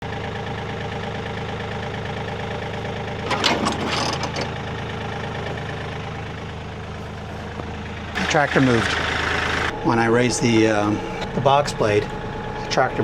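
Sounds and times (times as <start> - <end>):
tractor diesel engine idling: 0.0 - 13.0
rattling noise: 3.2 - 4.7, 7.4 - 9.7.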